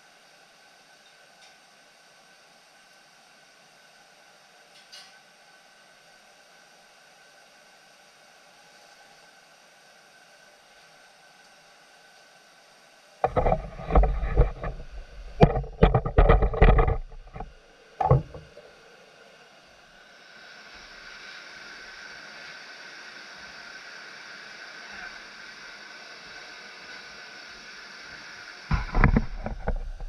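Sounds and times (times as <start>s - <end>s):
gas burner flame hissing: 0.0s - 30.0s
heavy knocks and clunks: 13.2s - 18.6s, 28.7s - 30.0s.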